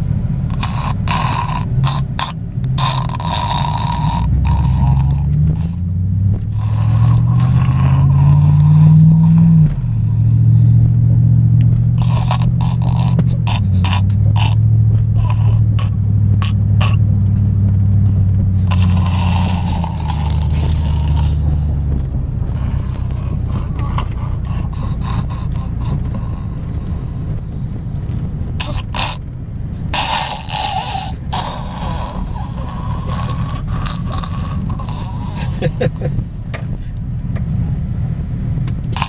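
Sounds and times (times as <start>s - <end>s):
car engine hum: 0.0s - 39.0s
road noise: 0.0s - 39.0s
child snoring: 0.5s - 5.9s, 6.5s - 10.8s, 11.9s - 17.0s, 18.5s - 21.9s, 22.5s - 29.2s, 29.9s - 36.1s.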